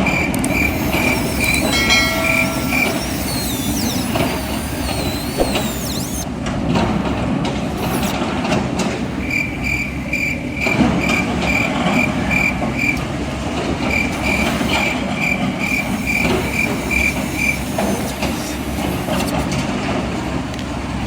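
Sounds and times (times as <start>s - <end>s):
mechanical rumble: 0.4s - 10.1s
high gliding squeals: 0.5s - 6.2s.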